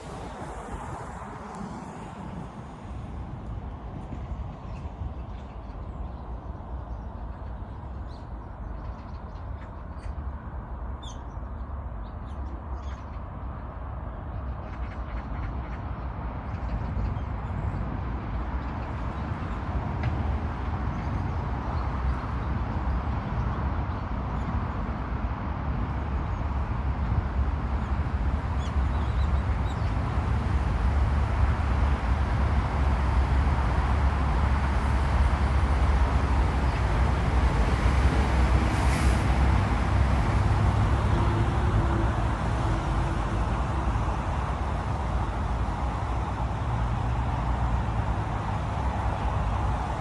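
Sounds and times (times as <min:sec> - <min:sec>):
wind buffeting microphone: 0:00.0 - 0:09.6
road and tyre rumble: 0:00.0 - 0:50.0.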